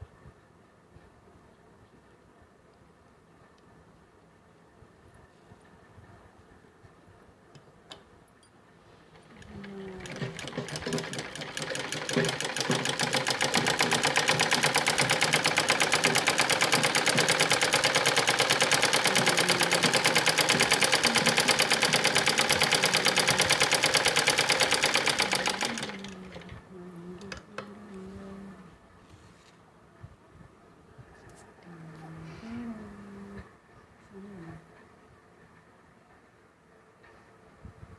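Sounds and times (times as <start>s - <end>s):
sewing machine stitching: 9.1s - 26.6s.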